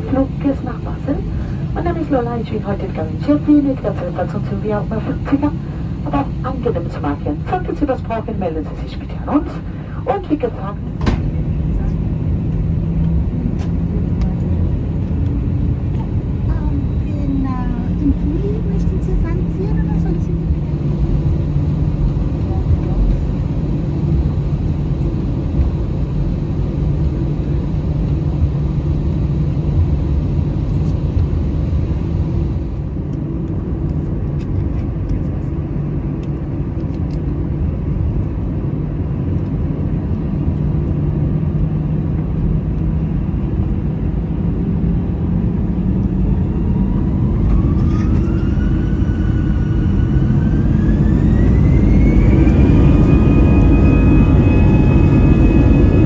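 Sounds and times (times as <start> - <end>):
jet engines rumbling: 0.0 - 56.0
engine whine rising in pitch: 45.6 - 56.0.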